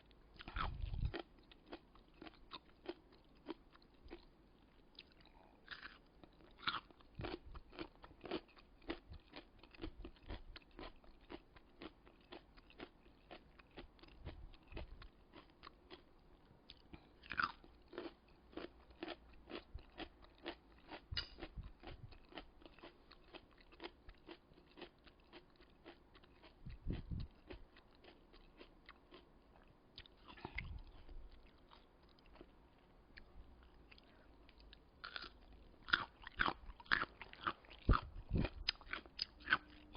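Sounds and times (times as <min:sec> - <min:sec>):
crisp chewing crunches: 0:00.0 - 0:39.9.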